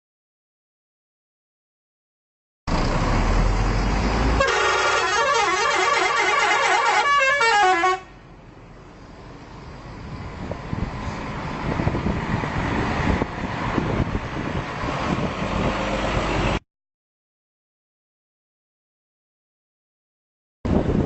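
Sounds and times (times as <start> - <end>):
musical air horns: 4.4 - 8.2.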